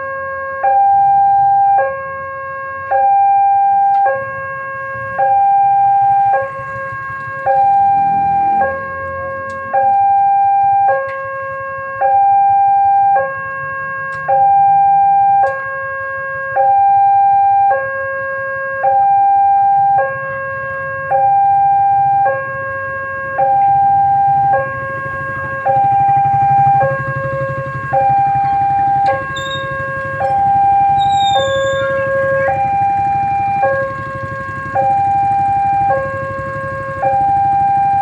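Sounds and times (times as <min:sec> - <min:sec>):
level crossing two-tone siren: 0:00.0 - 0:38.0.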